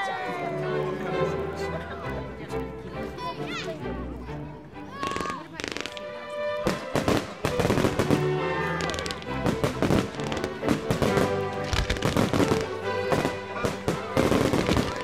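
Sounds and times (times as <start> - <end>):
music with held notes: 0.0 - 15.0
fireworks bangs and crackles: 5.0 - 15.0.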